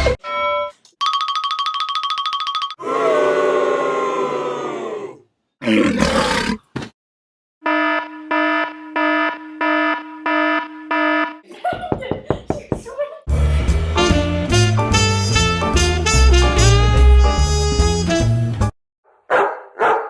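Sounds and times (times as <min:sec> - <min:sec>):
pulsing buzzer alarm tone: 0:07.6 - 0:11.4.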